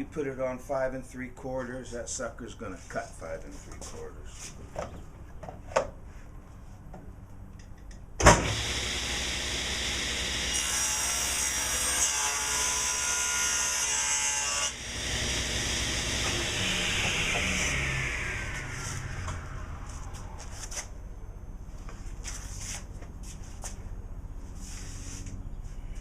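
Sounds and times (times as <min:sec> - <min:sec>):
motor winding down: 0:08.3 - 0:10.5, 0:14.8 - 0:20.8
table saw running: 0:08.3 - 0:20.5
saw blade cutting board: 0:08.4 - 0:20.9.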